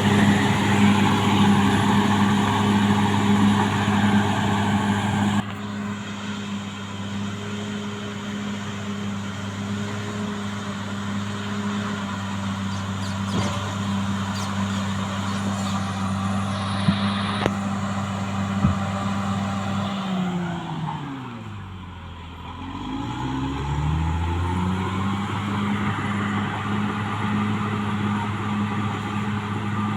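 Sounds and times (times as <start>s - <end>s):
bulldozer diesel engine running: 0.0s - 29.9s.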